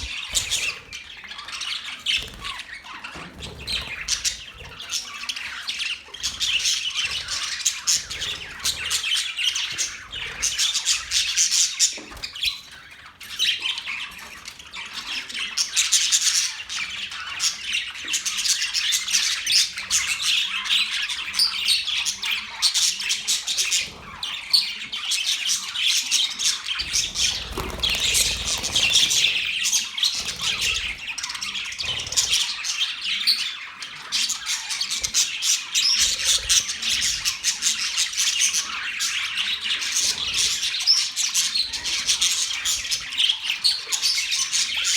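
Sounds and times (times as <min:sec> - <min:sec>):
budgerigars chirping: 0:00.0 - 0:44.9.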